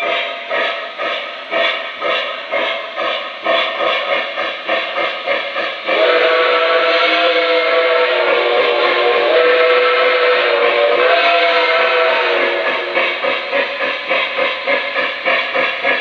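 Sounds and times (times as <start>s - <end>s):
steam whistle: 0.0s - 4.4s, 5.0s - 13.4s
model train steam chuffs: 0.0s - 16.0s.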